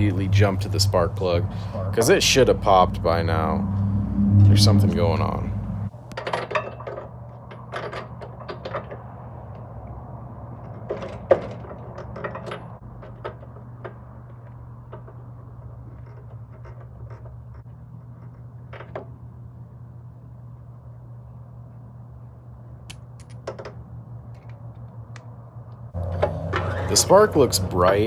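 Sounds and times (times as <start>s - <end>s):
steady low hum: 0.0s - 5.9s.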